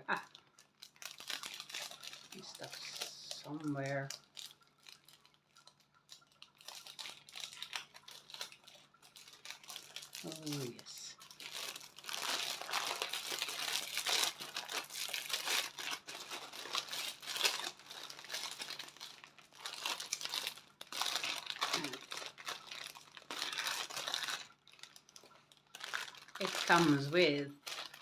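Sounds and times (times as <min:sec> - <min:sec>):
packaging crinkling and rustling: 0:00.0 - 0:28.0.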